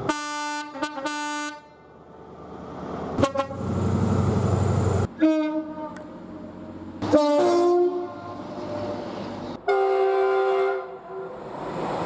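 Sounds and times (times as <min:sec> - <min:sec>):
train horn blasts: 0:00.1 - 0:01.8, 0:03.2 - 0:03.7, 0:05.1 - 0:06.0, 0:07.0 - 0:09.0, 0:09.6 - 0:11.4.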